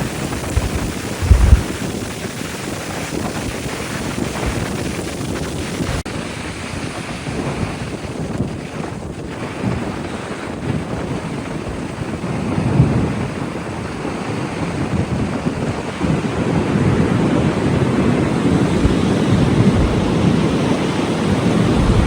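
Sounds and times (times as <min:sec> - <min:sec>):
ocean surf washing on beach: 0:00.0 - 0:22.0
wind buffeting microphone: 0:00.0 - 0:22.0.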